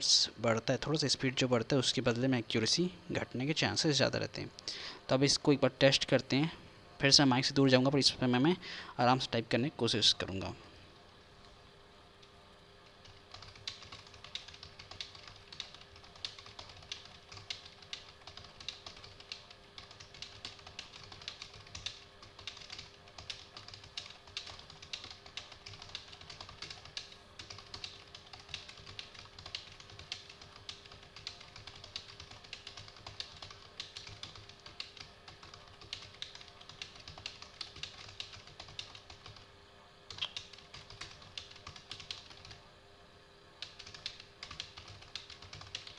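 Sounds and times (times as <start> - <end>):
keyboard typing clicks: 13.0 - 39.4, 40.1 - 42.6, 43.6 - 45.9.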